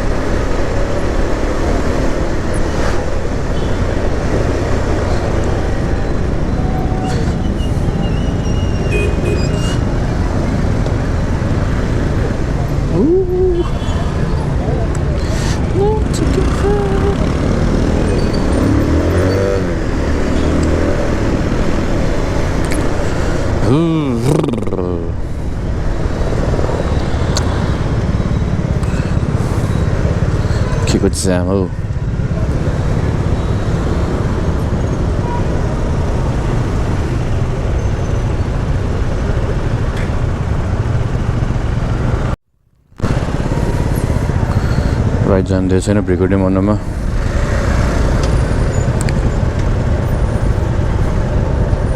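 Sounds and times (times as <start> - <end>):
vehicle engine and road rumble: 0.0 - 51.9.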